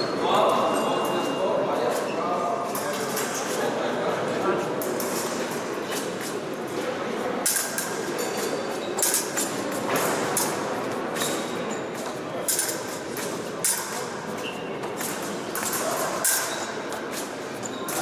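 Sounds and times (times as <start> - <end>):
murmur of large hall: 0.0 - 18.0
fencing blades clinking: 7.5 - 14.2, 15.0 - 18.0.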